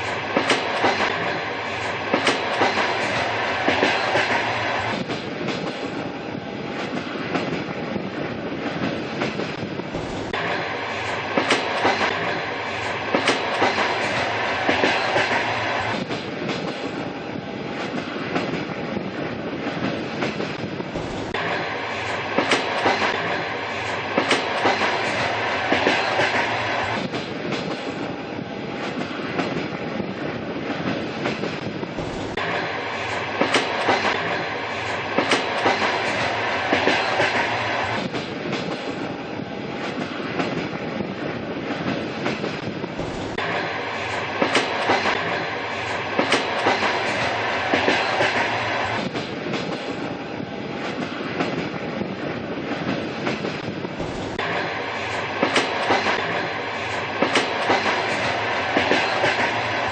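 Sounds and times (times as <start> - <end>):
wheels clacking over rail joints: 0.0 - 6.0, 8.7 - 17.0, 19.7 - 28.1, 30.8 - 39.1, 41.7 - 50.1, 52.7 - 59.9
train rumbling on rails: 0.0 - 59.9.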